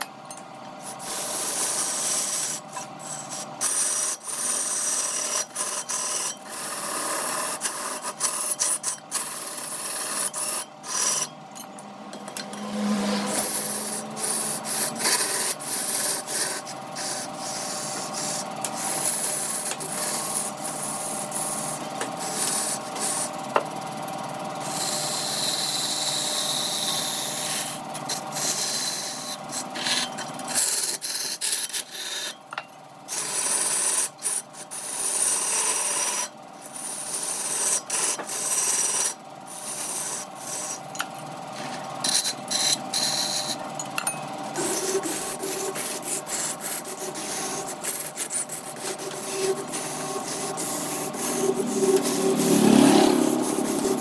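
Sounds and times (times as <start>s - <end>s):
steady hum: 0.0s - 25.8s, 39.5s - 54.0s
lathe tool cutting wood: 12.3s - 23.3s, 44.7s - 54.0s.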